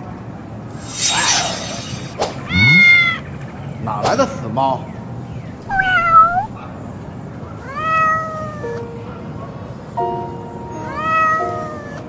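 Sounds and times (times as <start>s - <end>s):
cat meowing: 0.8s - 3.2s, 5.7s - 6.6s, 7.6s - 8.6s, 10.8s - 12.0s.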